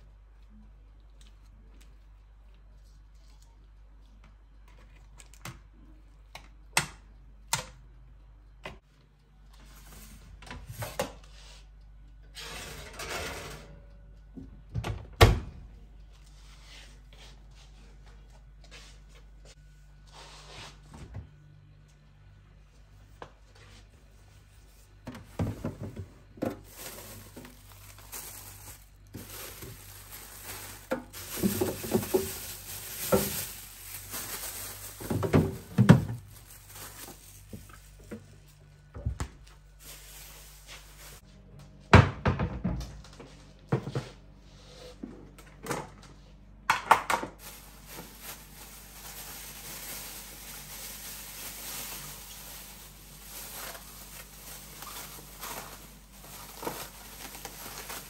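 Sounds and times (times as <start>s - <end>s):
objects being handled: 25.2s - 38.6s.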